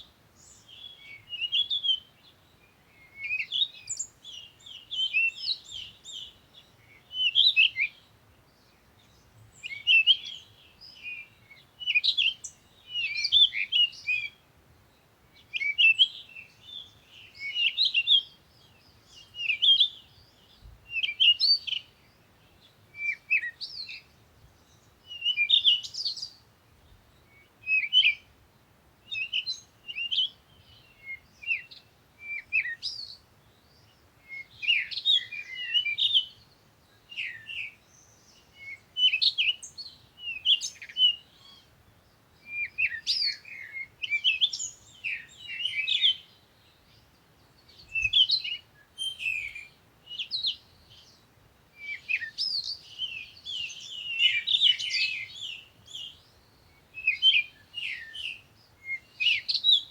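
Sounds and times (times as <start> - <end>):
songbirds chirping and trilling: 0.0 - 59.9.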